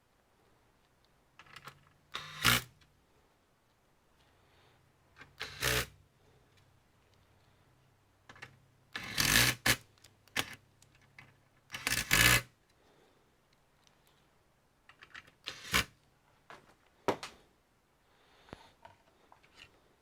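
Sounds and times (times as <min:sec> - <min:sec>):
computer parts clattering and scraping: 0:18.8 - 0:19.8.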